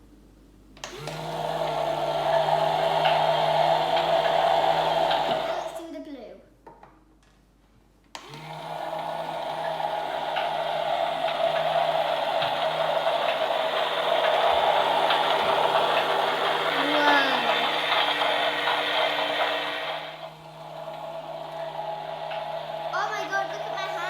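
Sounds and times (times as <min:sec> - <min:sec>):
toy motor whirring: 0:08.9 - 0:20.3, 0:21.0 - 0:24.0.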